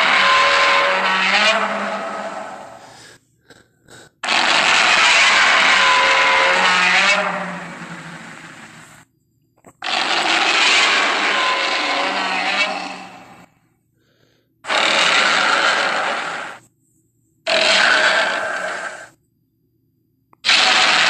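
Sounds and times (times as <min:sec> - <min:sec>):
monster roar: 0:00.0 - 0:02.9, 0:04.2 - 0:08.9, 0:09.8 - 0:13.5, 0:14.7 - 0:16.6, 0:17.5 - 0:19.1, 0:20.5 - 0:21.0.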